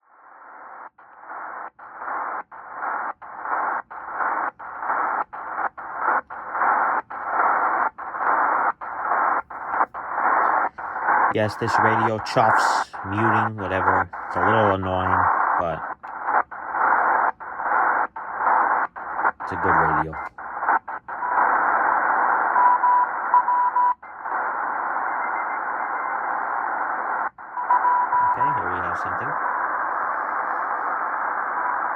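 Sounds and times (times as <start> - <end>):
radio static hiss: 0.0 - 31.9
radio muting chuff: 0.6 - 23.3, 24.1 - 31.9
morse code beeps: 22.6 - 24.0, 27.6 - 29.0.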